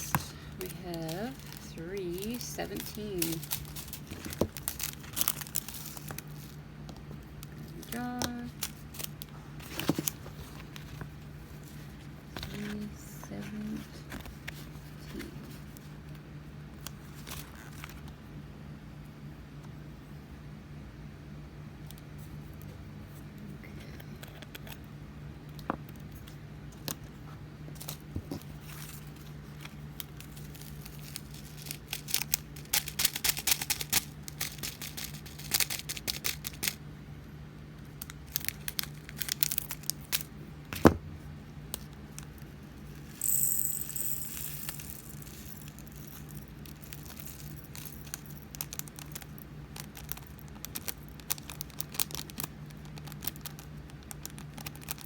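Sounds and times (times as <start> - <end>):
small beads rattling into plastic: 0.0 - 6.6, 30.2 - 36.8, 43.1 - 55.0.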